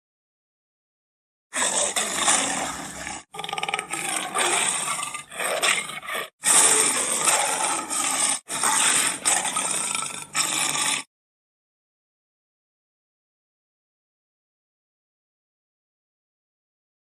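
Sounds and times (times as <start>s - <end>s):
big cat roaring and growling: 1.5s - 11.1s.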